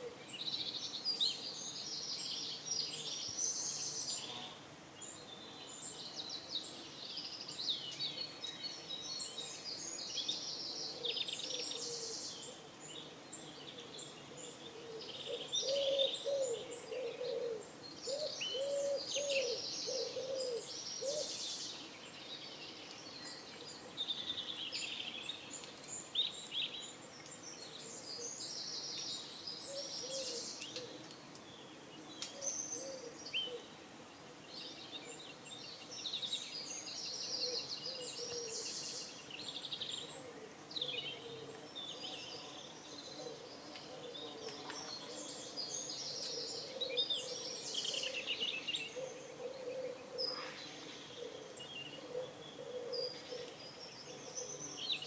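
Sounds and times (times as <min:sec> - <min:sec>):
small birds chirping and trilling: 0:00.0 - 0:55.0
pigeon cooing: 0:15.6 - 0:21.3, 0:49.0 - 0:50.4, 0:51.2 - 0:53.5.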